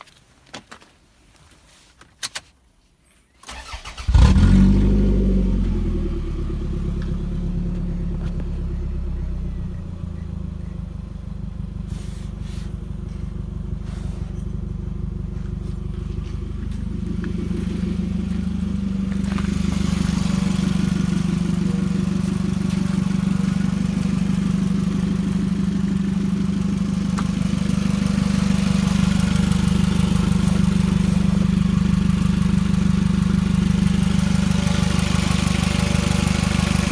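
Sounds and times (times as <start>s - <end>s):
engine cranking: 3.5s - 5.2s, 11.4s - 36.9s
car engine idling: 3.5s - 36.9s.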